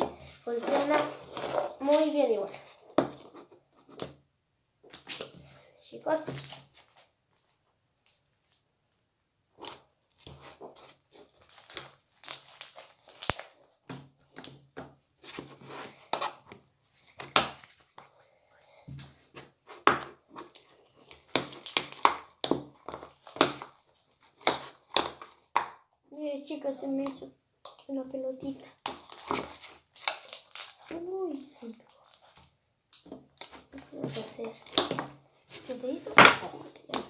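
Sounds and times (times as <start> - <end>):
slime crackling and squelching: 0.0 - 3.4, 9.5 - 14.4, 19.4 - 25.8, 26.6 - 37.0.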